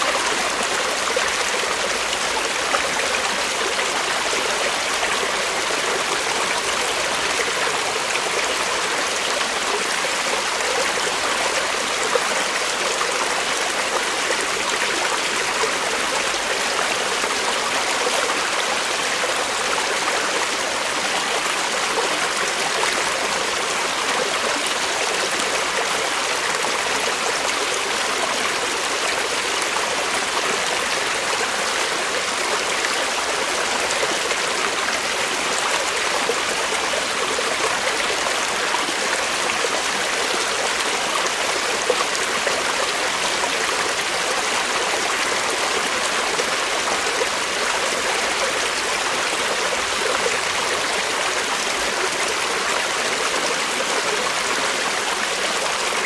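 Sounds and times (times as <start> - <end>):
creek water flowing over rocks: 0.0 - 56.0.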